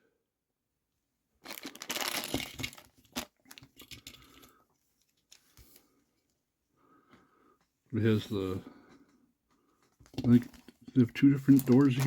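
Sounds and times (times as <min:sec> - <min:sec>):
plastic packaging crinkling and tearing: 0:01.4 - 0:04.2, 0:10.4 - 0:12.0.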